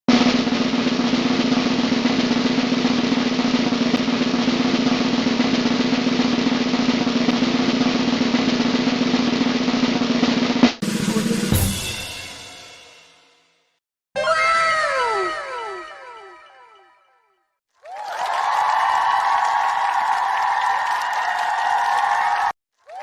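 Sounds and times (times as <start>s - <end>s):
snare drum roll: 0.1s - 13.2s.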